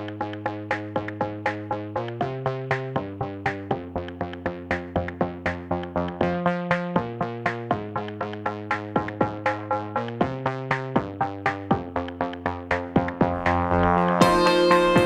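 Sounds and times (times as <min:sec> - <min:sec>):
plucked notes pulse: 0:00.0 - 0:15.0
synthesizer chords: 0:00.0 - 0:15.0.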